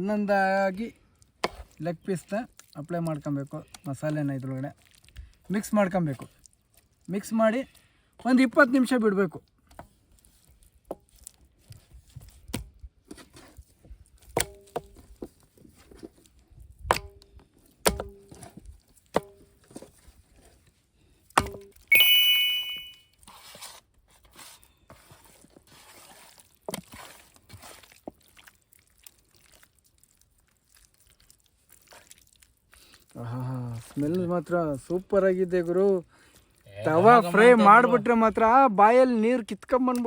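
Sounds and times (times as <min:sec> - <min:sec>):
squishing and handling sounds: 0:01.1 - 0:07.9, 0:09.4 - 0:14.4, 0:26.3 - 0:34.5.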